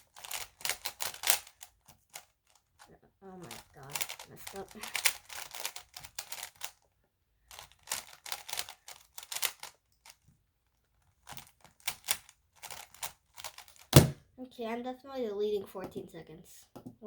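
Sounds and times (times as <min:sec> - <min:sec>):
plastic puzzle cube clicking turns: 0:00.0 - 0:06.8, 0:07.4 - 0:10.2, 0:11.2 - 0:13.9.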